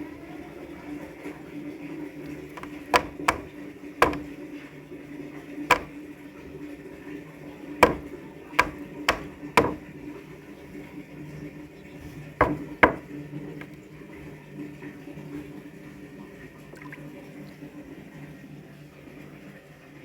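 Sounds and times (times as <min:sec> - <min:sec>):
fish knocking against plastic tub: 0:02.5 - 0:04.4, 0:05.7 - 0:06.0, 0:07.8 - 0:10.0, 0:12.4 - 0:13.8.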